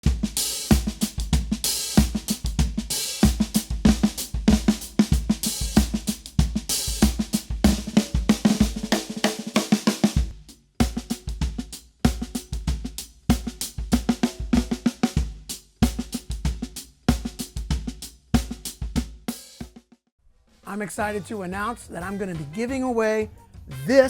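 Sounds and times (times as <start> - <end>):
hi-hat or cymbal strokes: 0.0 - 19.7
bass drum: 0.0 - 19.8
snare drum: 0.0 - 19.8.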